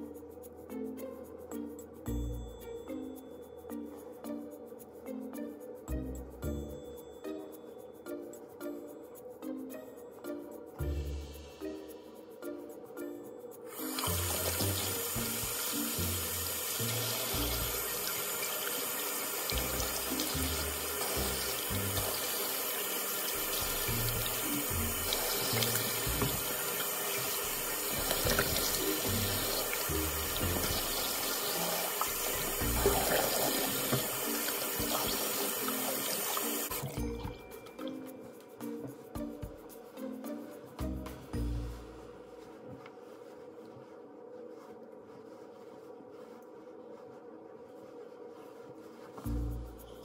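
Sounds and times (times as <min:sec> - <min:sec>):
background music: 0:00.0 - 0:43.3, 0:49.2 - 0:50.0
tap water running into sink: 0:13.7 - 0:37.4.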